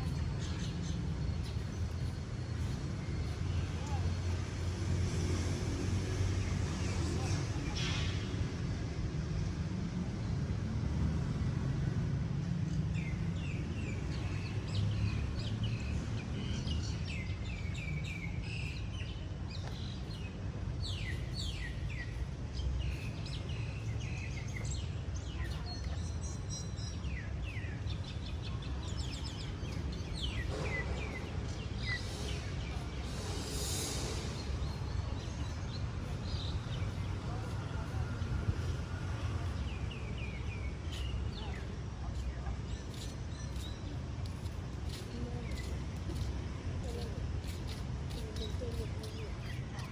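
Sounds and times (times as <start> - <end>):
small birds chirping: 13.0 - 49.9.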